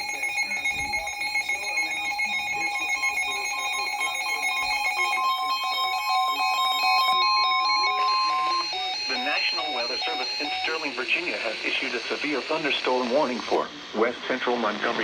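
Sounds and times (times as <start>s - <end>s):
electronic alert tones: 0.0s - 11.0s.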